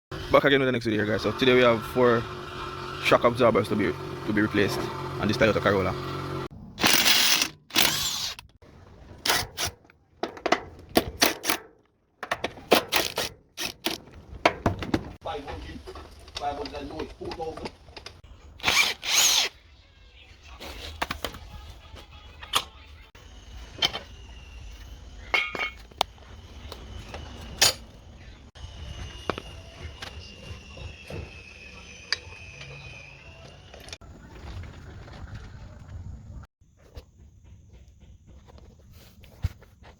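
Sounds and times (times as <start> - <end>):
power tool bursts: 6.2 - 8.5, 18.6 - 19.5.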